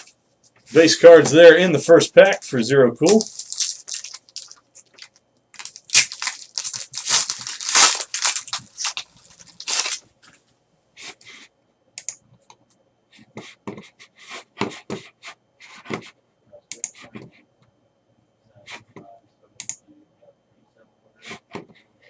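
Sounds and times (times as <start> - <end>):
cards rustling and clicking: 3.0 - 10.0
wrapper tearing and crinkling: 3.0 - 10.0.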